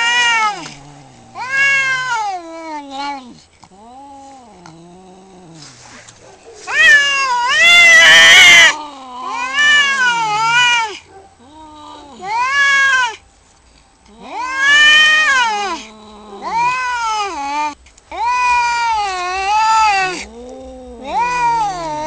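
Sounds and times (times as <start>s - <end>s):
cat hissing: 0.0s - 4.8s, 5.5s - 13.2s, 14.0s - 22.0s
cats yowling: 0.0s - 13.2s, 14.0s - 22.0s.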